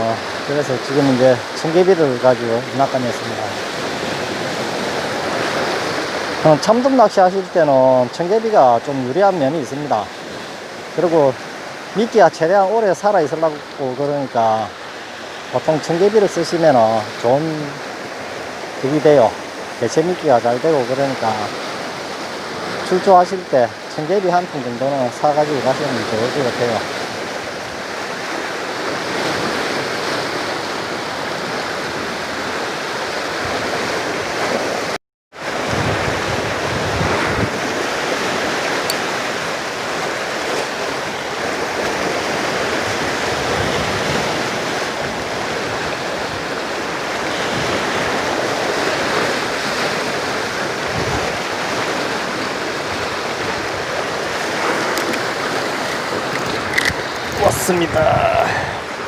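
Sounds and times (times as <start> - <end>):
sea waves on shore: 0.0 - 59.0
wind on microphone: 35.5 - 59.0.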